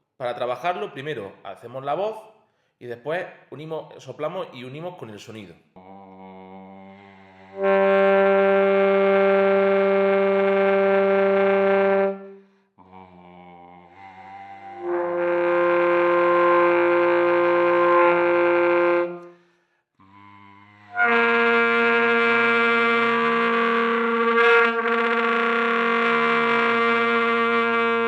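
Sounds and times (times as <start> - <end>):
saxophone long held notes: 5.8 - 19.3, 20.0 - 28.0
sung tone into saxophone: 5.8 - 19.3, 20.0 - 28.0.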